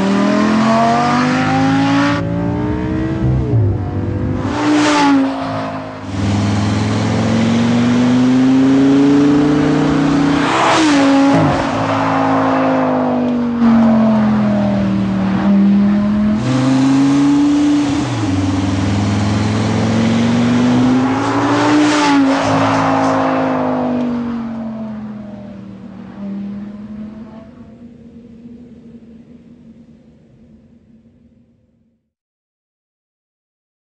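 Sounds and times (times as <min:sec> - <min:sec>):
car engine revving: 0:00.0 - 0:31.3
exhaust crackles: 0:02.1 - 0:08.3.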